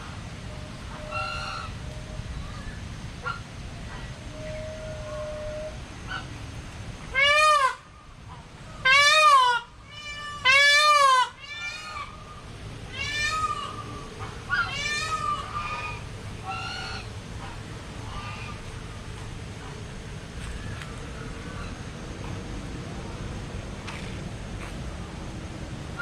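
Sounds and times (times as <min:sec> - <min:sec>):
large birds nasal calls: 0:07.1 - 0:18.8.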